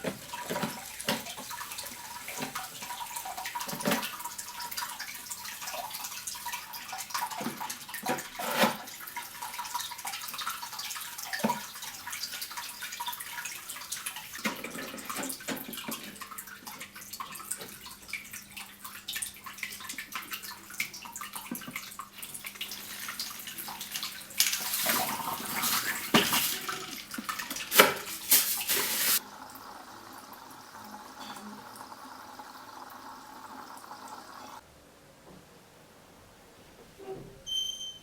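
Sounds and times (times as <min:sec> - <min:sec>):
steady water hiss: 0:00.0 - 0:07.4, 0:18.0 - 0:34.6
water running and splashing: 0:00.0 - 0:34.6.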